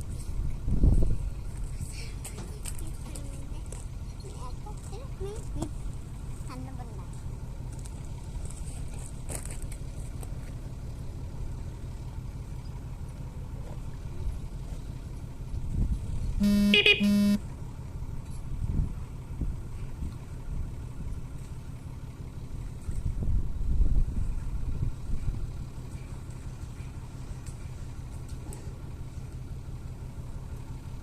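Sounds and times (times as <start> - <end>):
low engine hum: 0.0 - 31.0
vehicle horn toots: 16.4 - 17.4.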